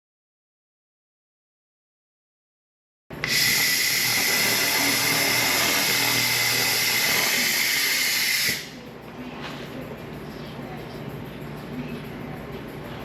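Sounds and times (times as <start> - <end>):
laser cleaner hissing and whining: 3.2 - 8.8.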